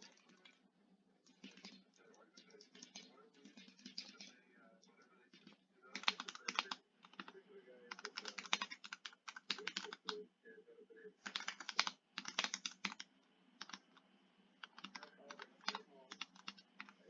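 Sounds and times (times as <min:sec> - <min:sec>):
mechanical keyboard typing: 0:01.3 - 0:04.3, 0:05.4 - 0:07.3, 0:07.9 - 0:10.2, 0:11.2 - 0:13.8, 0:14.6 - 0:17.0.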